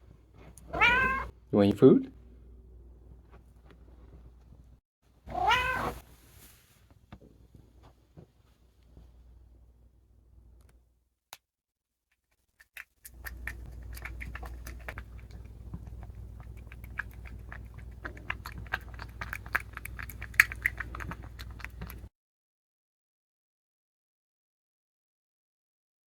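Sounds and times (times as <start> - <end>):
cat chewing crunchy food: 12.6 - 22.1.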